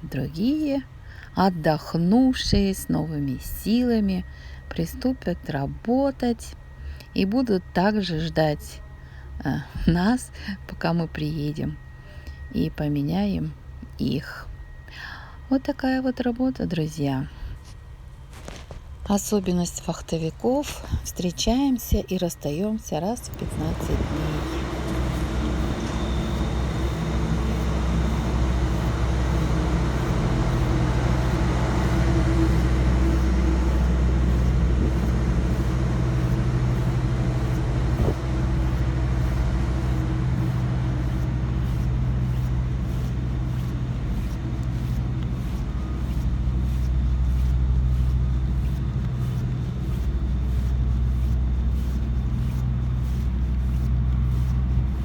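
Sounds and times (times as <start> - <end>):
large engine humming: 19.2 - 55.0.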